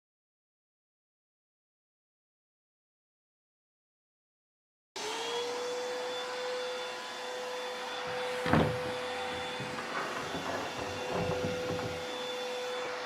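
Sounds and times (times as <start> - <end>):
table saw whining: 5.0 - 13.0
sharp knocks: 8.1 - 12.2.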